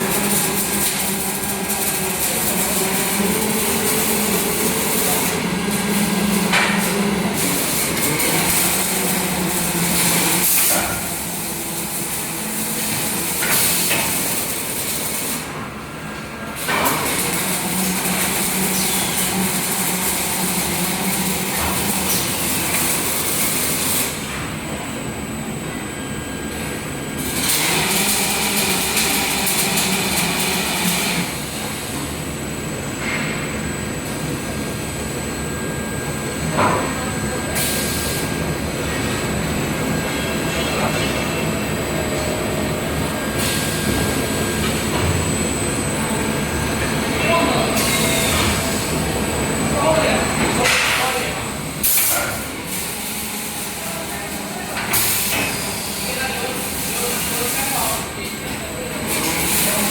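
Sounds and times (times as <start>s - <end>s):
welding arc crackling and hissing: 0.0s - 15.6s, 16.6s - 24.3s, 27.2s - 32.0s, 42.2s - 58.2s, 59.1s - 59.9s
steady machine hum: 0.0s - 59.9s.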